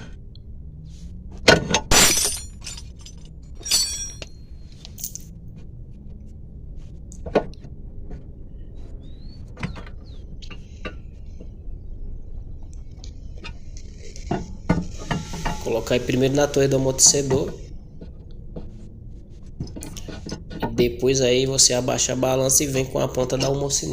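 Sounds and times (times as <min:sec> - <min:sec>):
metal parts clanking: 0:01.4 - 0:05.4.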